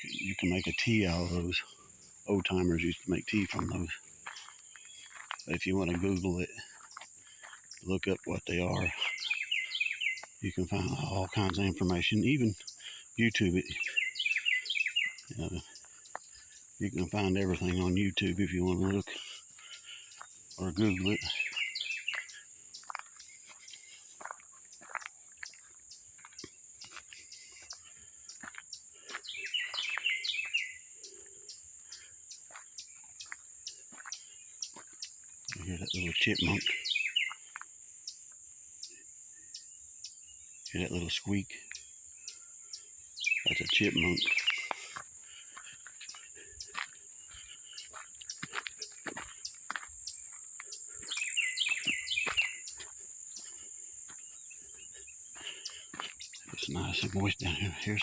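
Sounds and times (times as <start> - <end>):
insects droning: 0.0 - 58.0
chipmunk chirps: 20.1 - 31.6, 32.4 - 38.2, 39.5 - 45.0, 45.9 - 58.0
chipmunk chirping chatter: 43.2 - 44.9.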